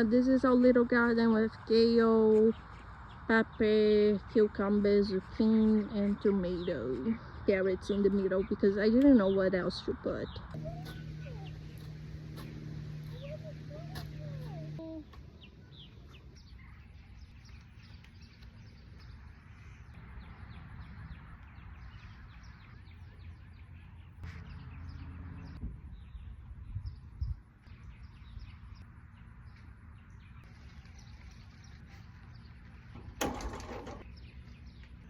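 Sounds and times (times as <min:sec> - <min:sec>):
small birds chirping: 0:00.0 - 0:35.0
low bumps: 0:32.2 - 0:34.4.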